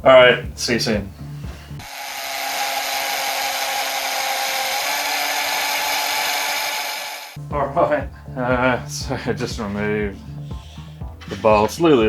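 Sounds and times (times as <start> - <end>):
electric power tool running: 1.8 - 7.4.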